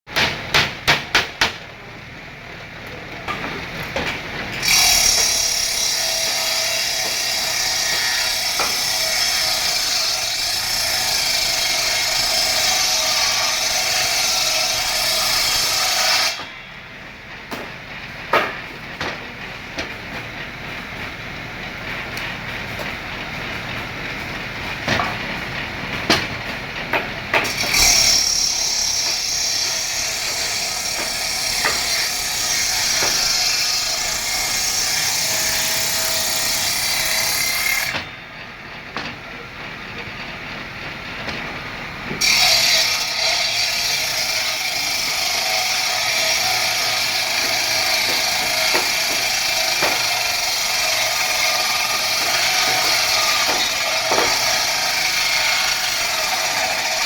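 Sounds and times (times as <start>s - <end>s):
power saw cutting wood: 3.4s - 16.7s, 26.0s - 38.2s, 42.1s - 57.0s
sharp knocks: 44.9s - 55.6s.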